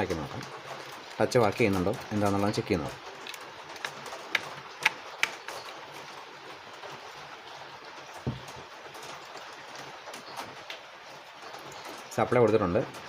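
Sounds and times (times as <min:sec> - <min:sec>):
dull knock: 0:08.2 - 0:08.5.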